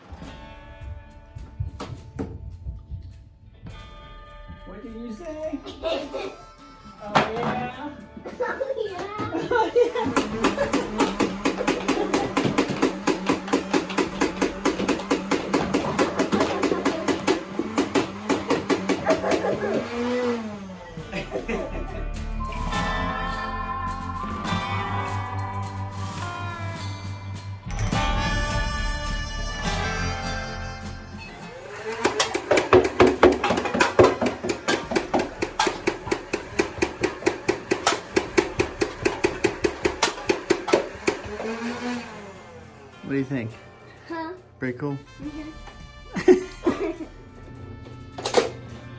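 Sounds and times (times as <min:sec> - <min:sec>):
flywheel motors humming: 0:09.3 - 0:27.3, 0:31.4 - 0:44.5
toy blaster rapid firing: 0:09.9 - 0:20.8, 0:31.6 - 0:42.4.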